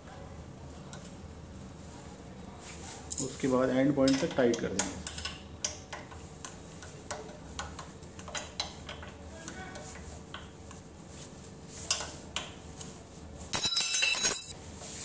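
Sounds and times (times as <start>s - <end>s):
light metal clicks and taps: 4.1s - 9.2s.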